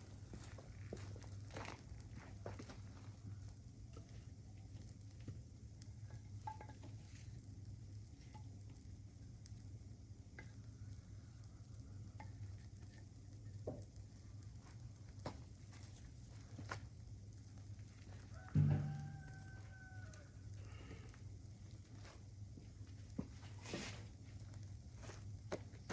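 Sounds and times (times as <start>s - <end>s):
faint crackling and ticks: 0.0s - 25.9s
steady low hum: 0.0s - 25.9s
rooster crowing: 18.2s - 21.0s.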